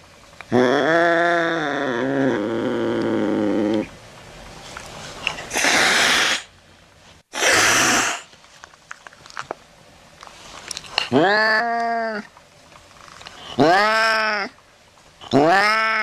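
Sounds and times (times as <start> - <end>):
cat hissing: 5.4 - 6.5, 7.3 - 8.3
cat yowling: 11.1 - 12.3, 13.6 - 14.5, 15.3 - 16.0.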